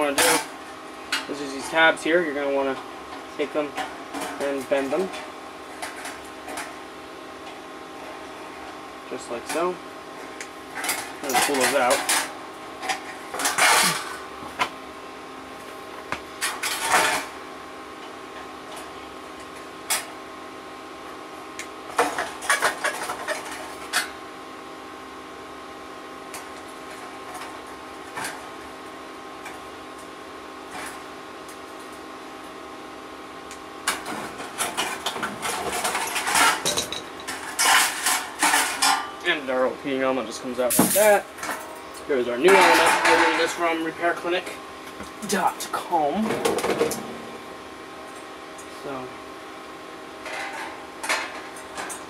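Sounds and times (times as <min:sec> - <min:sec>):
steady background hum: 0:00.0 - 0:52.0
sheet metal clinking and scraping: 0:42.4 - 0:43.7.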